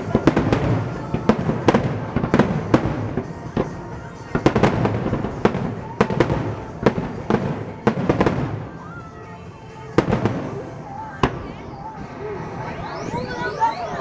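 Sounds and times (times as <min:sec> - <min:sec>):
fireworks bangs and pops: 0:00.0 - 0:09.0, 0:09.6 - 0:11.6.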